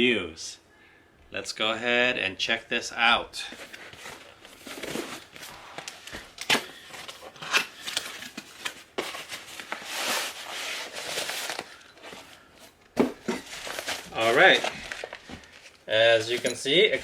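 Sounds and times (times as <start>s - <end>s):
packaging rustling: 3.5s - 17.0s.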